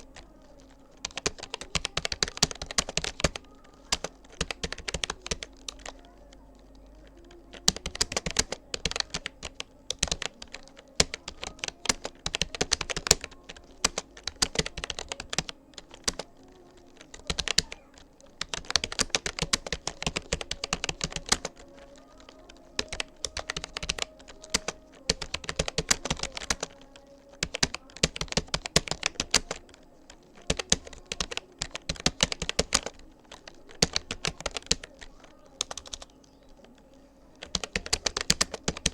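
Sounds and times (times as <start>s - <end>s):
keyboard typing clicks: 0.0s - 38.9s.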